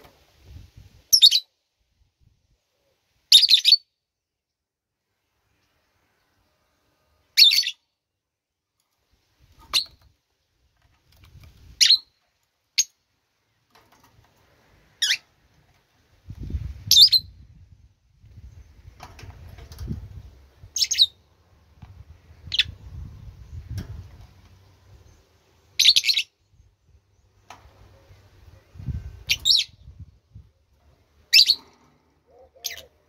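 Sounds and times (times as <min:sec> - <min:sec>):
bird chirping: 0:01.1 - 0:01.5, 0:02.8 - 0:04.0, 0:07.3 - 0:07.9, 0:20.6 - 0:21.3, 0:24.9 - 0:30.0, 0:31.2 - 0:33.0.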